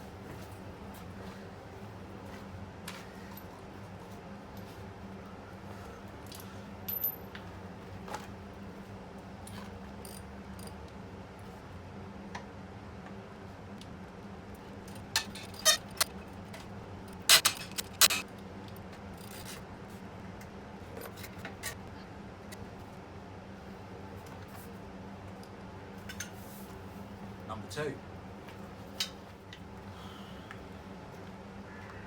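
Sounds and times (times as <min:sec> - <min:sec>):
steady low hum: 0:10.4 - 0:26.0
metal tools clinking: 0:14.9 - 0:16.2, 0:17.1 - 0:18.2.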